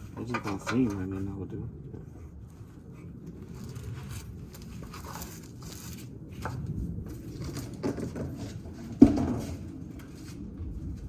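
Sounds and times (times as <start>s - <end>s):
low background hum: 0.0s - 11.0s
tools scraping and rustling: 3.4s - 10.4s.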